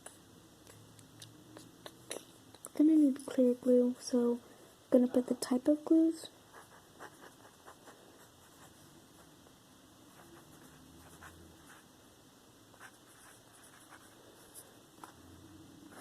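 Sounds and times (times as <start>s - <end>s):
pencil writing on paper: 6.5s - 8.8s, 10.1s - 11.8s, 12.8s - 14.2s.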